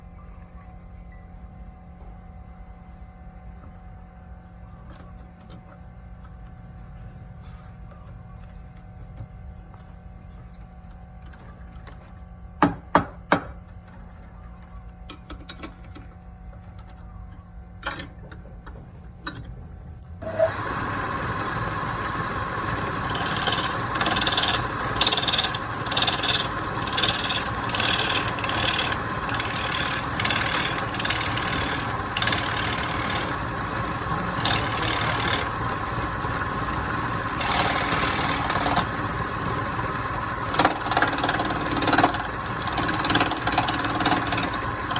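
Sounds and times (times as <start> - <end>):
power tool running: 20.2 - 44.9
rasping on wood: 23.0 - 33.4, 34.1 - 35.5.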